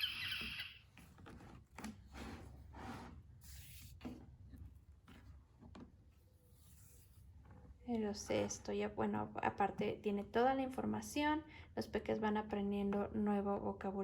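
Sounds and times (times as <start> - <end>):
faint rustling of book: 0.9 - 8.5.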